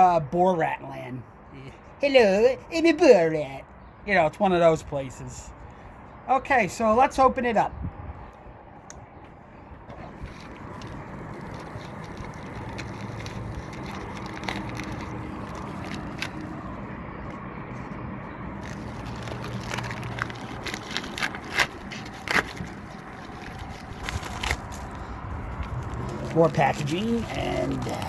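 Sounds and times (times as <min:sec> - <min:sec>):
package wrapping rustling: 0:10.1 - 0:16.7, 0:18.5 - 0:28.0.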